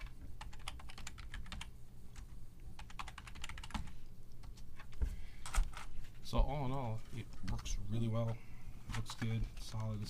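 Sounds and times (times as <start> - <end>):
mechanical keyboard typing: 0.0 - 1.7, 2.8 - 3.9.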